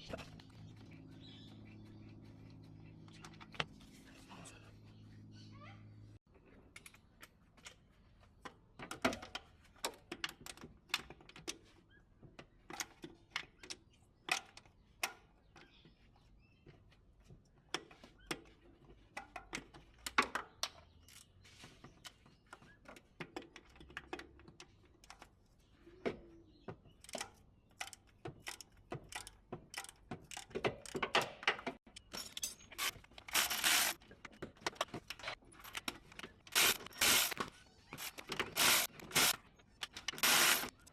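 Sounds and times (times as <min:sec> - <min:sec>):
metal tools clinking: 0:31.9 - 0:34.0
rasping bursts: 0:32.8 - 0:34.0, 0:36.5 - 0:37.4, 0:38.0 - 0:39.4, 0:40.2 - 0:40.8.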